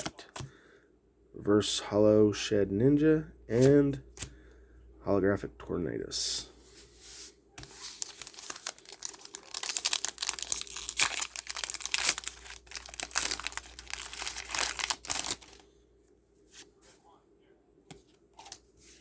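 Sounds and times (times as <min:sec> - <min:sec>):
wrapper crinkling and tearing: 0:07.7 - 0:15.6.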